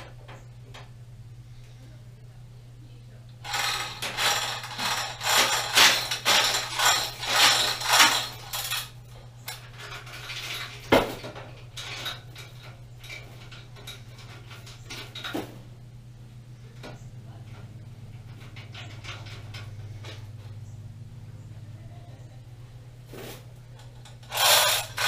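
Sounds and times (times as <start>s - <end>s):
loose metal parts clattering: 3.4s - 15.8s, 16.6s - 20.8s, 23.2s - 25.0s.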